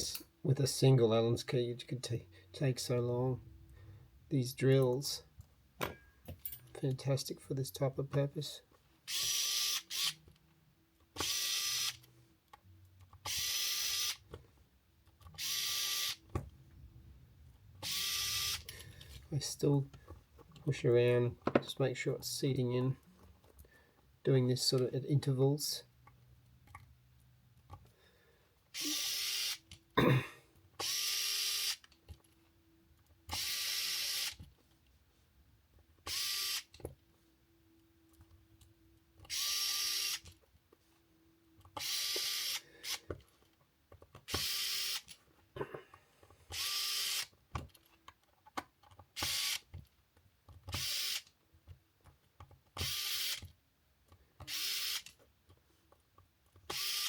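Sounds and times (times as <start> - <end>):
cordless drill driving screws: 9.1 - 10.2, 13.3 - 14.2, 15.4 - 16.2, 17.8 - 18.6, 30.8 - 31.8, 33.3 - 34.4, 36.1 - 36.7, 39.3 - 40.2, 41.8 - 43.0, 44.3 - 45.0, 46.5 - 47.3, 49.2 - 49.6, 50.7 - 51.2, 52.8 - 53.5, 54.4 - 55.1, 56.7 - 57.0.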